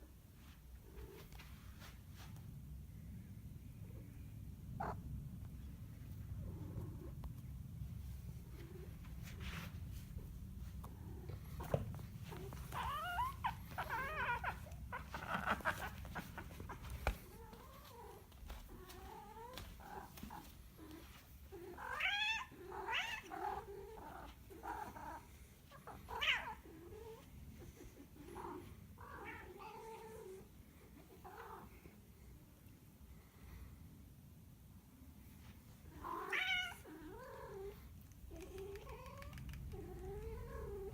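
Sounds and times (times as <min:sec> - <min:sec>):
cat yowling and meowing: 0:12.4 - 0:16.3, 0:36.1 - 0:37.3.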